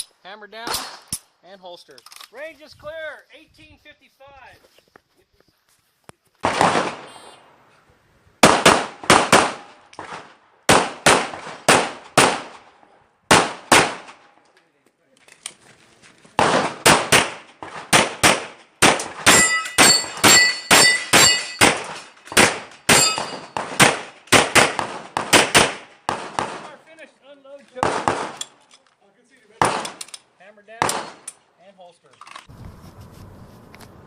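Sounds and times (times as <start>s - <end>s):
pistol firing rapid shots: 8.4s - 12.5s, 13.3s - 14.1s, 16.4s - 26.6s, 27.8s - 28.4s
steel targets ringing: 19.3s - 21.8s, 22.9s - 23.6s.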